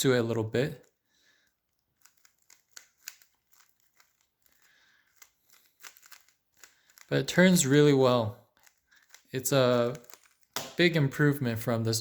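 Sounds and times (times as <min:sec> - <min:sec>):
plastic puzzle cube clicking: 0:01.7 - 0:07.6, 0:08.5 - 0:10.7.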